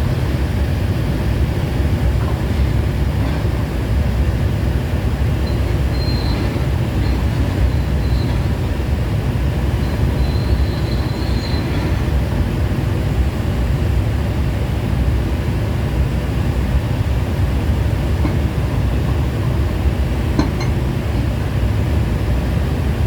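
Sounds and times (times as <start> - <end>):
diesel engine running under load: 0.0 - 23.0
faint high squeal: 5.5 - 8.6, 9.8 - 12.2.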